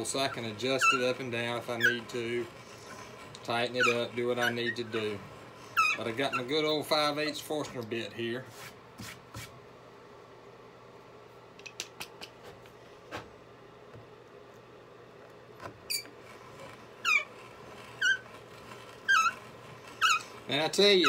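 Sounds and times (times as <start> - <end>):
hand brace squeaking: 0.1 - 6.6, 15.9 - 21.0.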